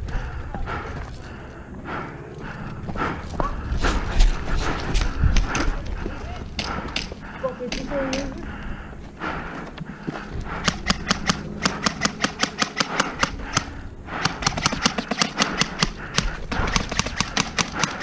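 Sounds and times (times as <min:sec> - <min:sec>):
airsoft rifles firing rapid shots: 0:10.6 - 0:18.0.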